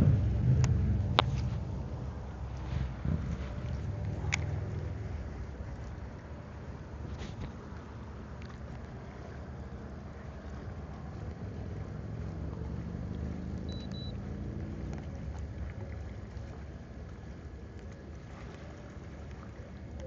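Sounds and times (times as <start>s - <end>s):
boat motor humming: 0.0s - 20.0s
water noise: 0.0s - 20.0s
wind: 0.0s - 20.0s
short high beeps: 13.7s - 14.1s.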